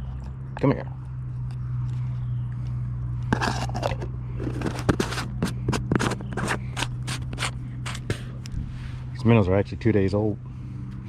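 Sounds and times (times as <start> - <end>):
low hum: 0.0 - 11.0
hand rummaging in bucket: 3.3 - 7.5.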